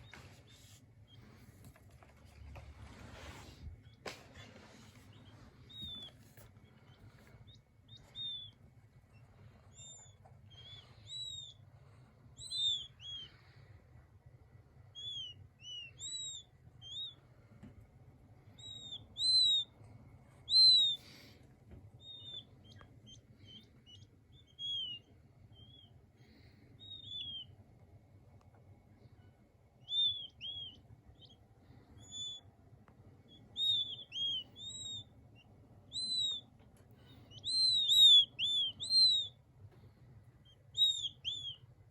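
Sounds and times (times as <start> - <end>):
quail chicks peeping: 0.0 - 41.9.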